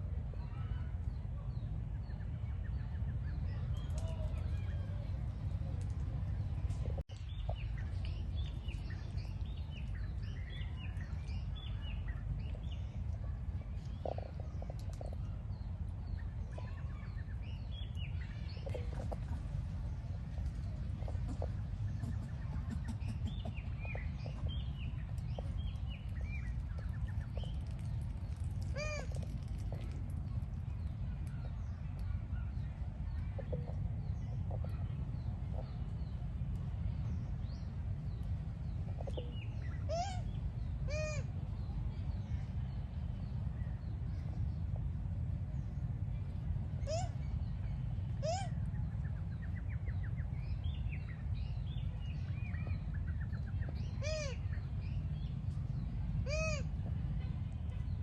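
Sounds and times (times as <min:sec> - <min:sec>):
steady low rumble: 0:00.0 - 0:58.0
small birds chirping: 0:02.1 - 0:44.6.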